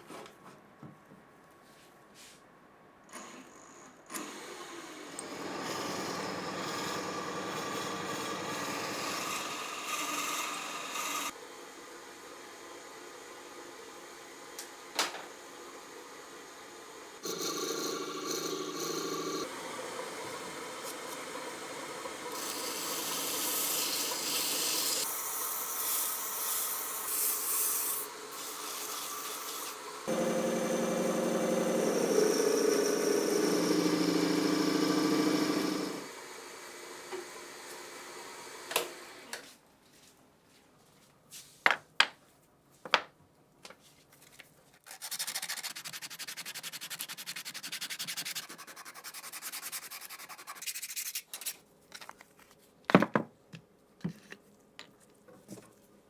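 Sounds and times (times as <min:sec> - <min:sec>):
power tool humming: 0:28.4 - 0:39.2
sanding metal: 0:44.9 - 0:51.3.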